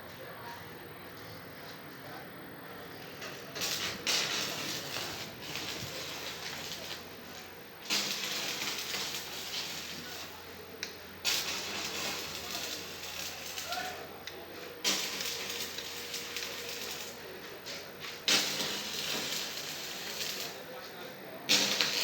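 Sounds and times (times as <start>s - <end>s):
arc welding crackling hiss: 3.5s - 10.6s, 11.2s - 14.2s, 14.8s - 20.8s, 21.5s - 22.0s.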